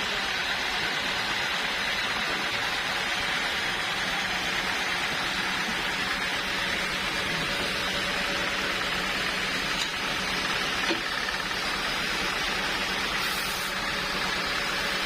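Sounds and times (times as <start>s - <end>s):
sawmill machinery hiss: 12.5s - 15.0s.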